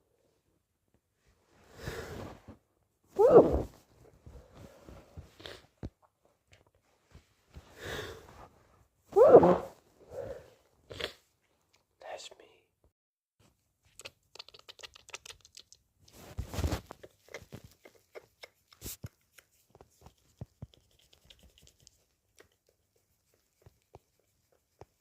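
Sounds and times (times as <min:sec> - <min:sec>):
rustling and scratching handling: 0:16.1 - 0:25.0.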